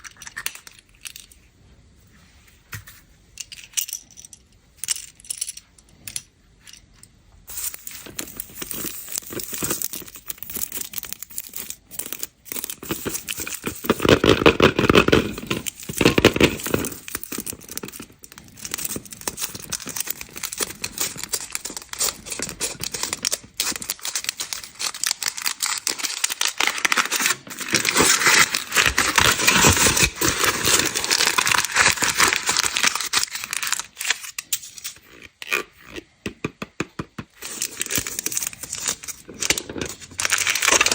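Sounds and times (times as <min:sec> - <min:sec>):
candy wrappers tearing and crinkling: 0:07.5 - 0:35.8, 0:37.4 - 0:40.9.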